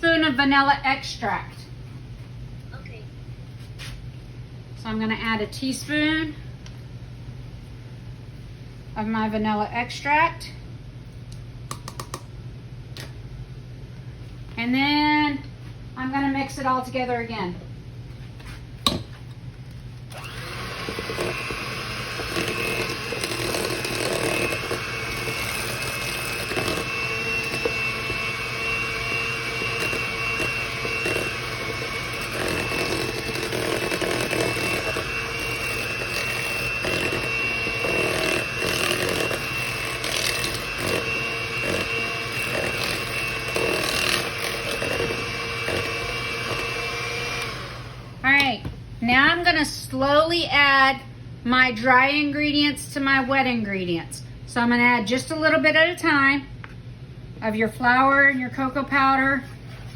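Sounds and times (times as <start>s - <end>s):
electric mixer whining: 20.1s - 48.2s.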